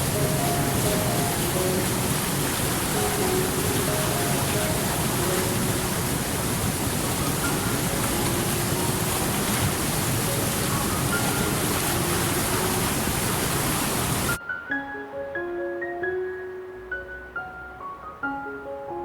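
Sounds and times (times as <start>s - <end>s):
water rushing: 0.0s - 14.4s
gentle background music: 0.0s - 19.0s.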